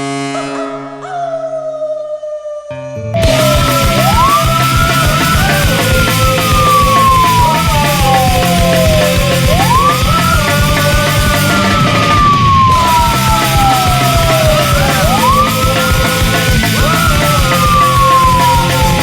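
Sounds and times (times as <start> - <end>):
siren-like rising tone: 2.7 - 19.0
punk rock music: 3.0 - 19.0.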